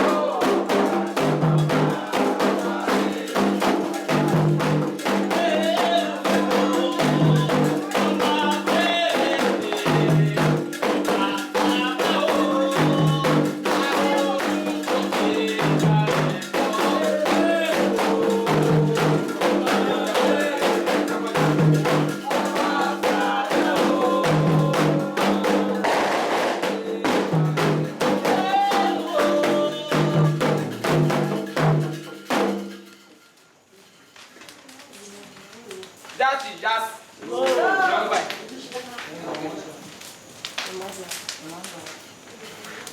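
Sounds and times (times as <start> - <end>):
people chanting: 0.0 - 33.0, 37.0 - 39.9
hand drums and percussion: 0.0 - 33.3.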